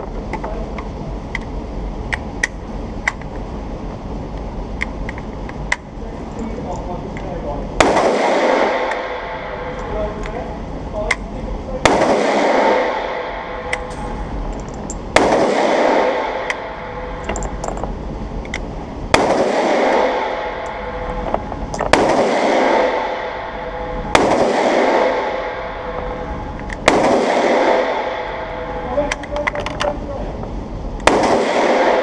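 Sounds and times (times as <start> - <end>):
rifle shots echoing: 7.8 - 10.1, 11.8 - 17.7, 19.1 - 29.3, 31.0 - 32.0.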